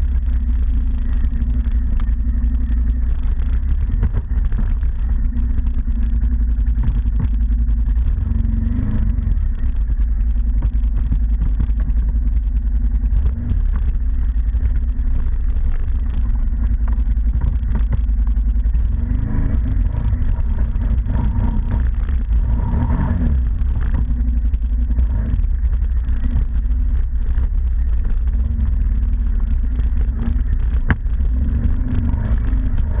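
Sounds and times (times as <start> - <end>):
atv engine running: 0.0 - 33.0.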